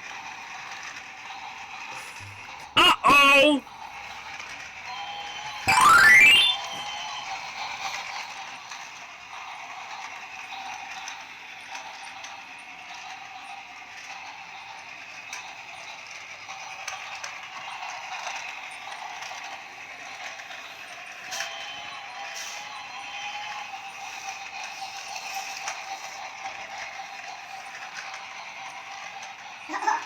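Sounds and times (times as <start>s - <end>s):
toy train motor whirring: 0.0s - 30.0s
short rising squeal: 5.7s - 6.8s.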